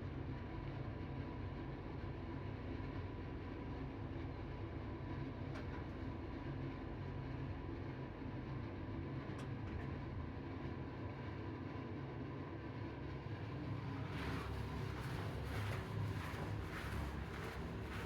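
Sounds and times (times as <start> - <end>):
elevator hum and rumble: 12.7 - 18.0.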